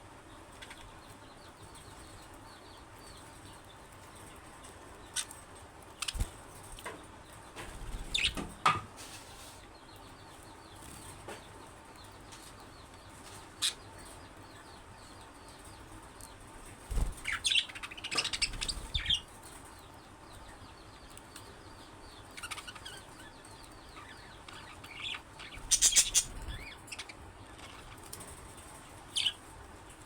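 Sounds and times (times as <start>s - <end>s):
budgerigars chirping softly: 5.0s - 6.4s, 7.8s - 8.5s, 9.8s - 15.6s, 16.2s - 28.4s, 29.0s - 29.6s.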